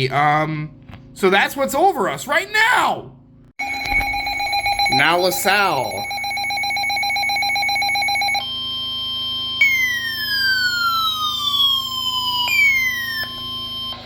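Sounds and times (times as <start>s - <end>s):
weather radio alert alarm: 3.6s - 14.0s.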